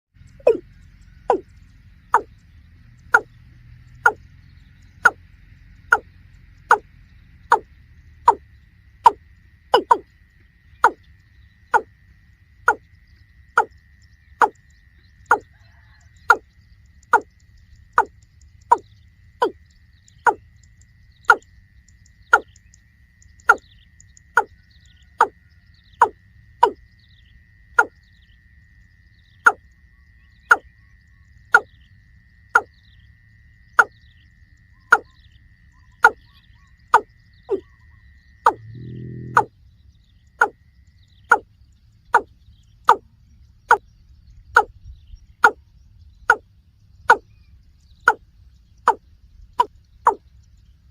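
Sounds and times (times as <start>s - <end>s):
faint high whine: 0.2s - 50.9s
bird calling sharp kok notes: 0.3s - 0.7s, 2.1s - 2.3s, 9.8s - 10.1s.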